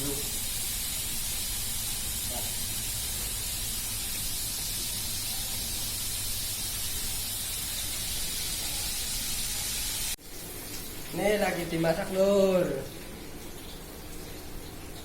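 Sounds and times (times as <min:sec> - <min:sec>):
fish sizzling in hot oil: 0:00.0 - 0:10.2.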